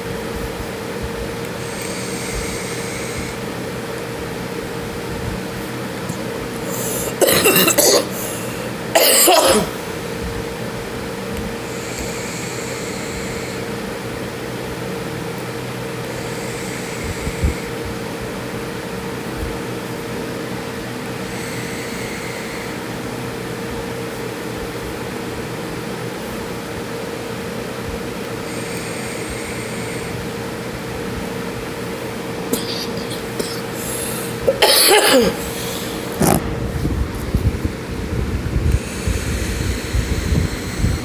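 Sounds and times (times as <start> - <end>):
steady hum: 0.0 - 41.0
person coughing harshly: 6.6 - 9.8, 32.5 - 36.5.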